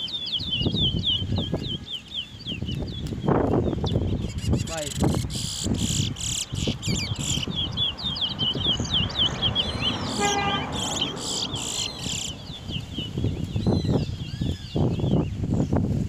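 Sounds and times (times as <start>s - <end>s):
finches singing: 0.0s - 15.8s.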